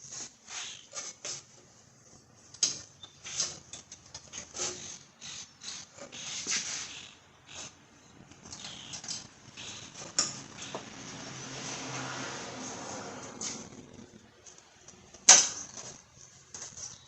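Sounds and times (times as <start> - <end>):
metallic tool clicks and rattles: 8.4 - 10.7.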